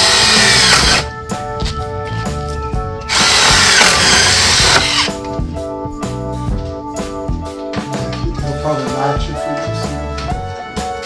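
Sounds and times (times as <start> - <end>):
power drill running: 0.0 - 1.0, 3.1 - 5.1
background music: 0.0 - 11.0.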